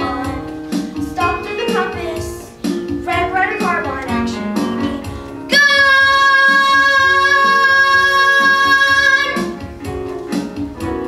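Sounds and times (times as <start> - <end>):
instrumental accompaniment: 0.0 - 11.0
singer holding long note: 5.5 - 9.4.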